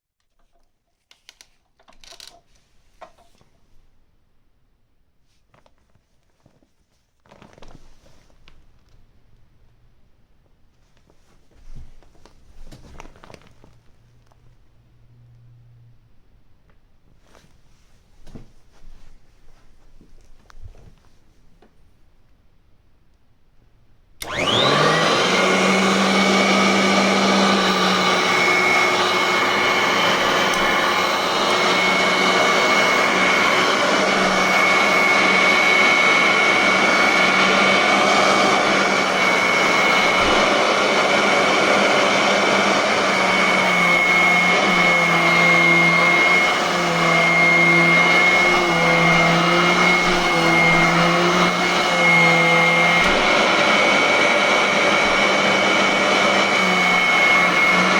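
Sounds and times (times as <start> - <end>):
vacuum cleaner motor whining: 24.2 - 57.9.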